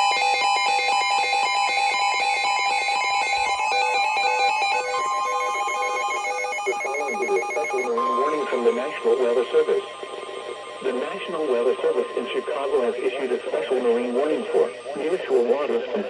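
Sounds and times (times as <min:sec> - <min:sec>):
electronic beeping tune: 0:05.0 - 0:15.7.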